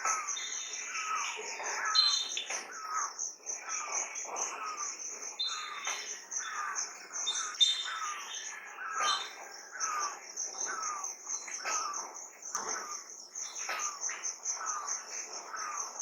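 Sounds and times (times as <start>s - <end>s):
high bird chirps: 0.0s - 4.0s, 4.8s - 10.2s
pulsing insect trill: 0.0s - 16.0s.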